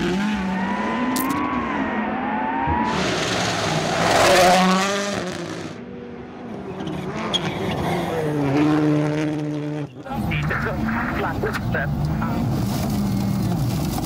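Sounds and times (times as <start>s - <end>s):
rally car engine passing: 0.0s - 14.0s
tyre and gravel rush: 12.2s - 14.0s.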